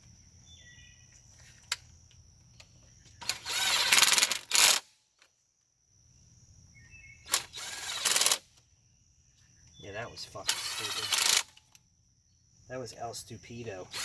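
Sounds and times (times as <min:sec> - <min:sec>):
impact gun rattling: 0:03.2 - 0:04.8, 0:07.3 - 0:08.4, 0:10.5 - 0:11.7.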